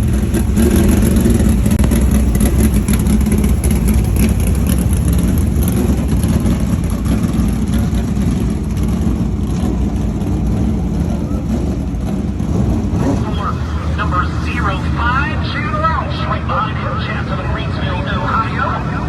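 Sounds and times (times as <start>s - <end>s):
race car engines droning: 0.0s - 19.0s.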